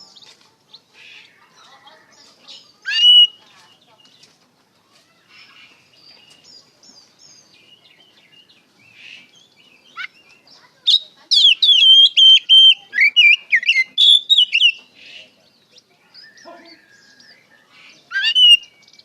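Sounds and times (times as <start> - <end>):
bird singing whistled phrases: 2.6 - 3.4, 9.5 - 14.9, 16.1 - 19.0.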